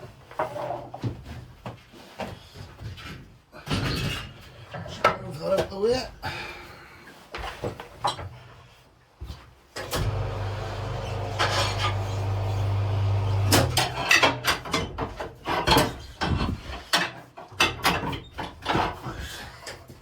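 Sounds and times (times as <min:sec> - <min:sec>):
electric motor humming: 0:10.0 - 0:13.8.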